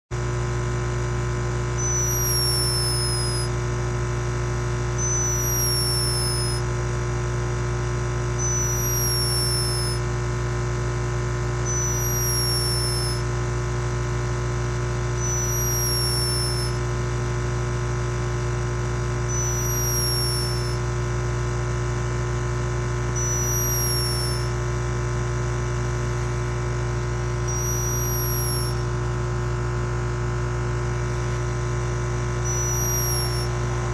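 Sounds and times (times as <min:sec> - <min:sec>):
steady electrical hum: 0:00.5 - 0:33.9
hummingbird snoring whistles: 0:01.8 - 0:03.5, 0:04.9 - 0:06.6, 0:08.4 - 0:10.0, 0:11.6 - 0:13.3, 0:15.2 - 0:16.8, 0:19.2 - 0:20.9, 0:23.1 - 0:24.6, 0:27.4 - 0:28.9, 0:32.4 - 0:33.9.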